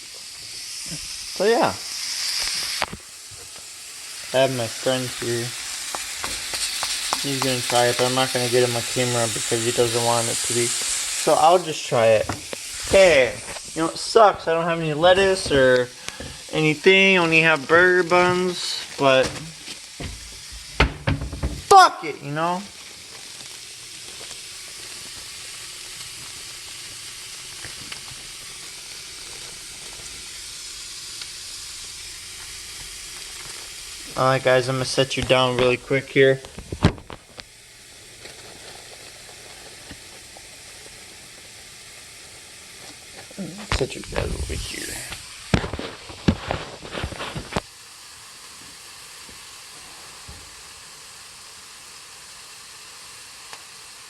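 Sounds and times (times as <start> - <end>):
patties sizzling in a skillet: 0.0 - 54.0
small ticks: 5.9 - 8.0
camera handling knocks: 20.0 - 21.6.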